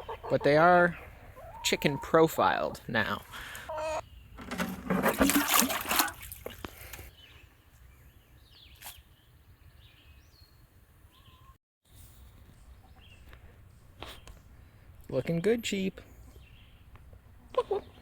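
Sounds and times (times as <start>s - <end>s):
chicks cheeping: 0.0s - 4.4s.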